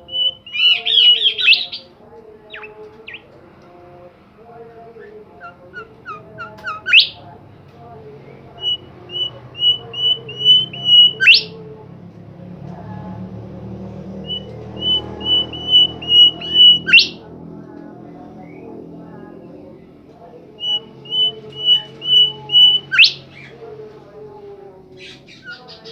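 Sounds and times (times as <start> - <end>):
songbird whistling: 0.0 - 1.9, 2.5 - 3.4, 5.0 - 7.3, 8.4 - 11.5, 14.2 - 17.2, 20.6 - 23.5
faint low hum: 0.0 - 25.9.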